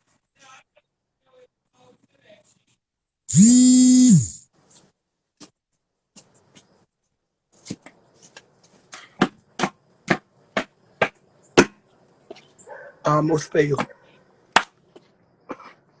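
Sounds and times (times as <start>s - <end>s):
loud steady tone: 3.3s - 4.4s.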